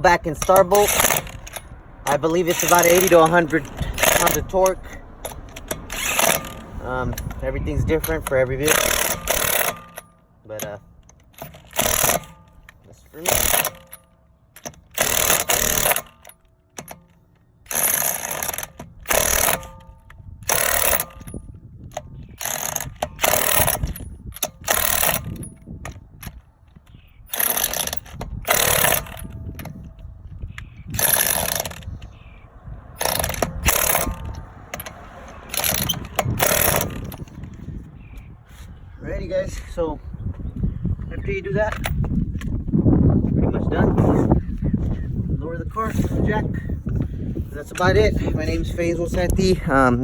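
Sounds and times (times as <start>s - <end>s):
ratchet wrench clicking: 0.1s - 32.3s, 33.0s - 37.4s.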